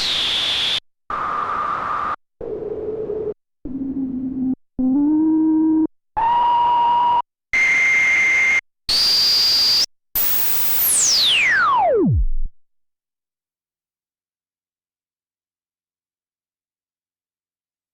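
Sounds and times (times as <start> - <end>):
synthesizer pitch sweep: 10.9 - 12.6.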